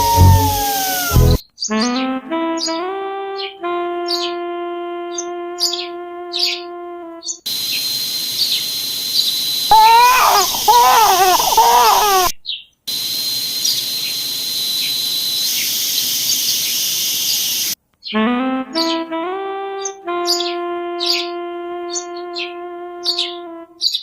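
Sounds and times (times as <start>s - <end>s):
insects buzzing: 0.0s - 1.4s, 7.3s - 12.3s, 12.9s - 17.8s
wavering high-pitched cry: 0.0s - 1.4s, 9.7s - 12.4s
bird chirps: 0.0s - 2.0s
music: 0.0s - 6.5s, 18.2s - 23.4s.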